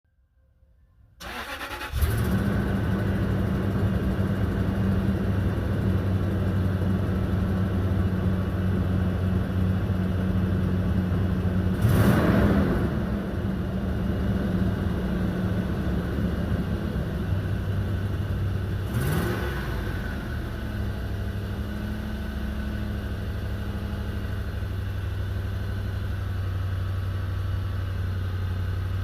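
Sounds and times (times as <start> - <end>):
car starter cranking: 1.2 - 2.4
engine revving: 1.2 - 6.6, 11.4 - 23.6
car engine idling: 1.2 - 29.0.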